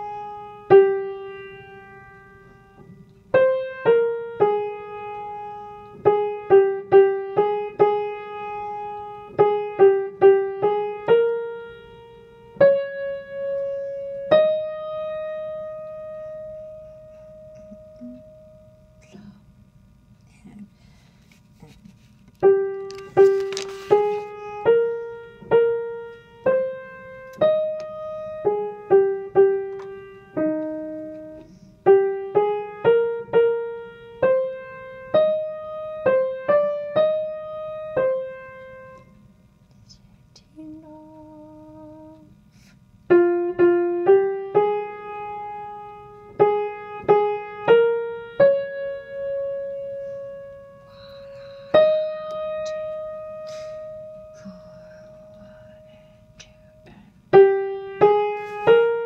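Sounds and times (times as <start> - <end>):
piano single-note melody: 0.0 - 18.8, 24.1 - 39.2, 43.1 - 54.8.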